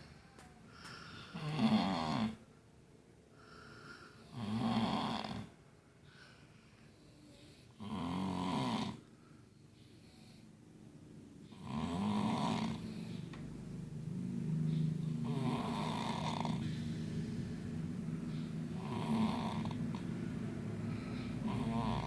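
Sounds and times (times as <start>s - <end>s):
quiet breathing: 0.0s - 1.6s, 3.3s - 4.4s, 5.4s - 7.9s, 8.9s - 22.0s
person snoring: 1.2s - 2.4s, 7.8s - 9.0s, 11.6s - 13.0s, 15.2s - 16.8s, 18.8s - 20.0s, 21.3s - 22.0s.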